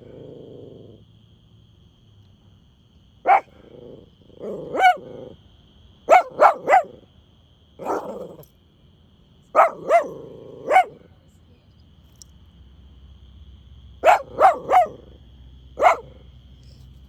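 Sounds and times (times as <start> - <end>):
puppy barking: 3.2 - 3.7, 4.4 - 5.3, 6.1 - 7.0, 7.8 - 8.4, 9.5 - 11.0, 14.0 - 15.2, 15.8 - 16.2
puppy growling: 3.3 - 5.4, 7.8 - 8.4, 9.6 - 11.0.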